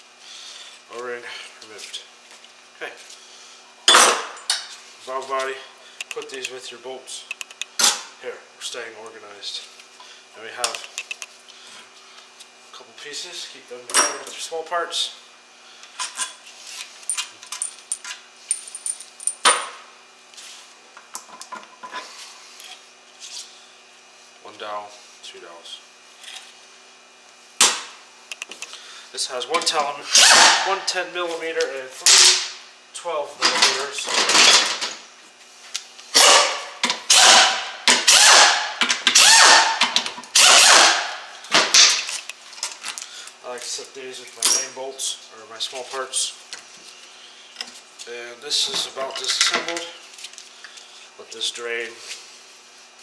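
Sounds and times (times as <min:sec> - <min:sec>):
ratchet wrench clicking: 0:07.3 - 0:07.7, 0:10.7 - 0:11.3
metal parts clinking: 0:17.1 - 0:19.5, 0:41.7 - 0:44.7.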